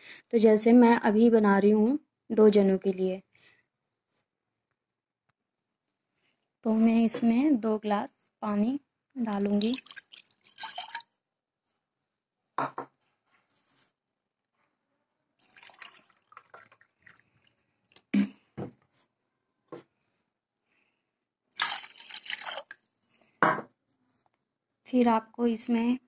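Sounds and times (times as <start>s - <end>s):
water pouring into frying pan: 9.3s - 11.1s, 15.4s - 17.2s, 21.6s - 23.0s.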